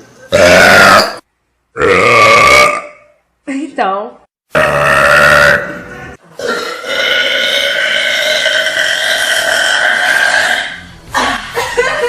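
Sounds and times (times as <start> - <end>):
girl burping: 1.8 - 3.1, 6.4 - 11.4.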